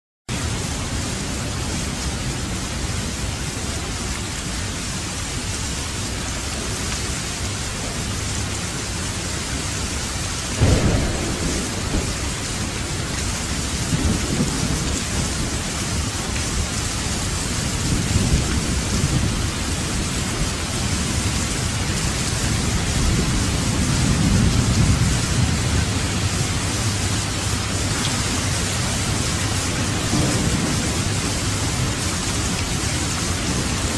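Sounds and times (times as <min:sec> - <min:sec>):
heavy rain falling: 0:00.3 - 0:33.9
rolling thunder rumbles: 0:10.3 - 0:33.9
thunder clap: 0:10.6 - 0:16.4, 0:28.4 - 0:33.9.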